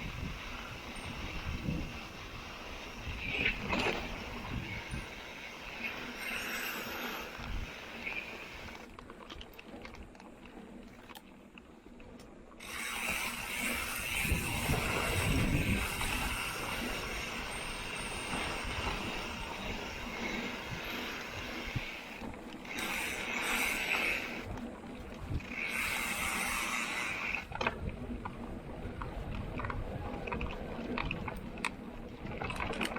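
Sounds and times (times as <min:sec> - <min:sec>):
bike hub freewheeling buzz: 0:00.0 - 0:08.9, 0:12.6 - 0:29.3
tyre and wind noise: 0:00.0 - 0:32.9.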